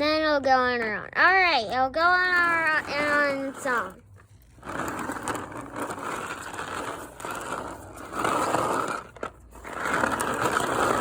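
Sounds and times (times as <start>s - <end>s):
rough grating scrape: 2.4s - 11.0s.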